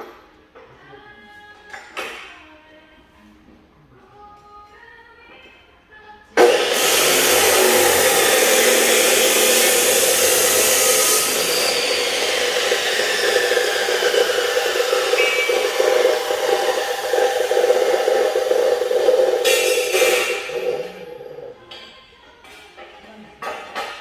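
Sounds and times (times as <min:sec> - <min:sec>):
faint music: 0:00.0 - 0:06.4, 0:20.3 - 0:24.0
power tool hissing and whirring: 0:06.4 - 0:21.6.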